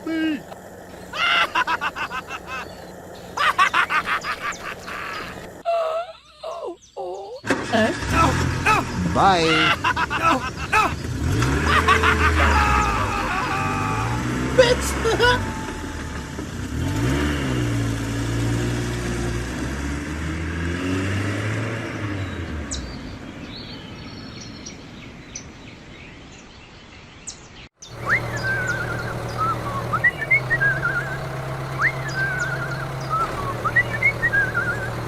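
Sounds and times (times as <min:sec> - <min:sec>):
engine running: 0:00.0 - 0:05.6, 0:07.4 - 0:23.7, 0:27.8 - 0:35.0
birds chirping: 0:00.0 - 0:19.2, 0:21.9 - 0:35.0
low hum: 0:08.4 - 0:19.7.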